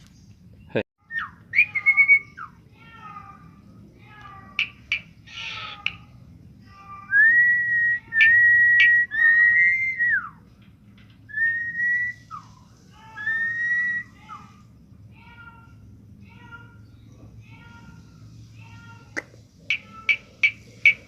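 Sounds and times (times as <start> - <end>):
bird whistling: 1.1 - 2.6, 7.2 - 10.4, 11.3 - 12.6, 13.2 - 14.5
bird chirping: 3.3 - 6.3, 16.4 - 21.0.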